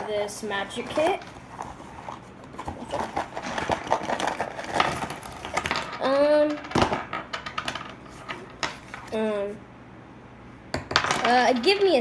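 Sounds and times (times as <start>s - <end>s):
plastic pieces clicking and rustling: 0.8s - 9.2s.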